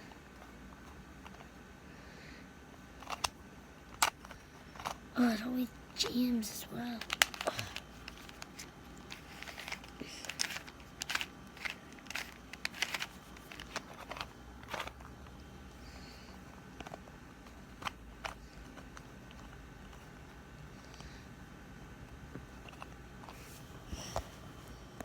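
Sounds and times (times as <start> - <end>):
plastic puzzle cube clicking: 7.0 - 15.0.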